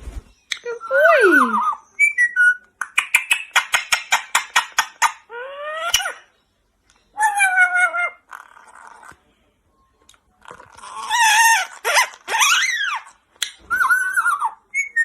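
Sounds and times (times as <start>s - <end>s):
parrot calling: 0.5s - 6.4s, 7.1s - 9.1s, 10.8s - 15.0s.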